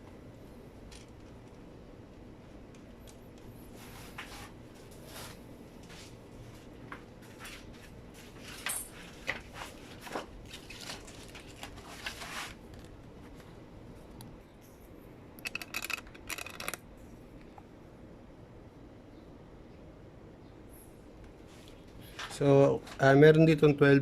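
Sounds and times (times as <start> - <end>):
metal parts clinking and scraping: 15.4 - 16.8.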